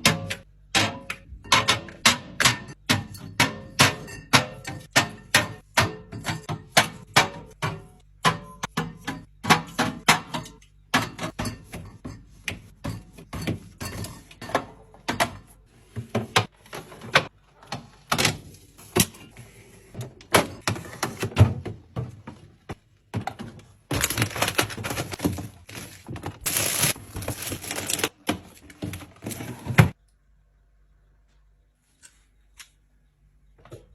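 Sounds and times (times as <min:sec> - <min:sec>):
containers and bottles clacking: 0:20.2 - 0:29.7.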